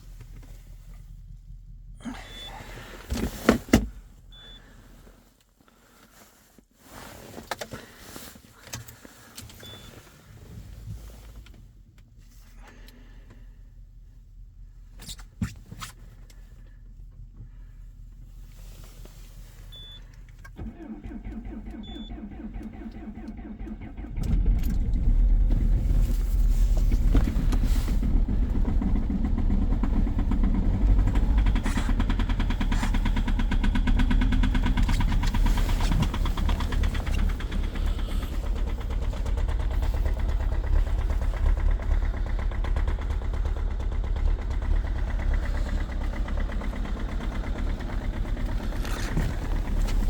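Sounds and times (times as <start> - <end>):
diesel engine cranking: 19.8 - 50.0
diesel engine knocking: 20.8 - 50.0.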